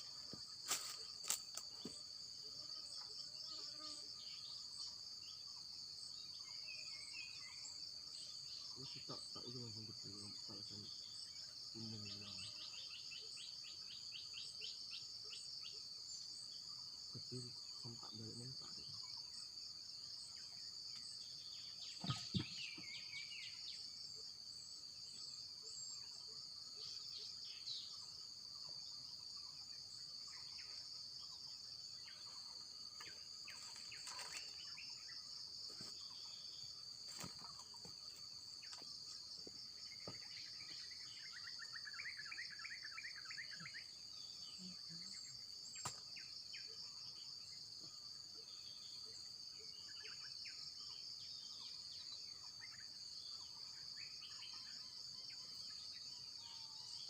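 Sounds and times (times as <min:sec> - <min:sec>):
high-pitched insect chorus: 0:00.0 - 0:57.0
bird calls: 0:20.4 - 0:23.9.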